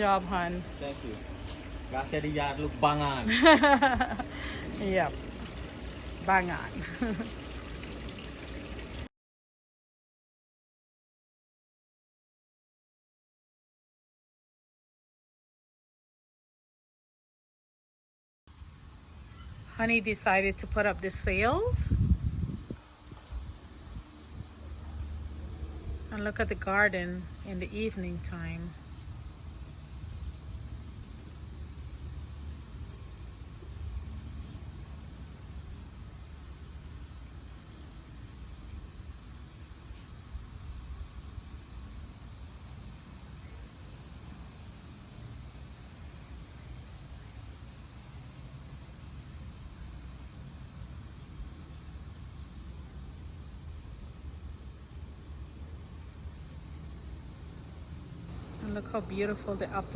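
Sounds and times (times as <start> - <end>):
crickets chirping: 0.0 - 9.1, 18.5 - 59.9
low steady rumble: 0.0 - 9.1.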